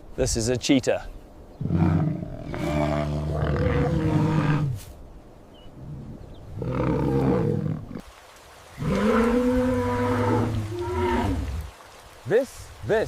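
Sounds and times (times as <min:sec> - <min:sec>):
large animal roaring: 0:01.6 - 0:04.8, 0:06.6 - 0:08.0, 0:08.8 - 0:11.7.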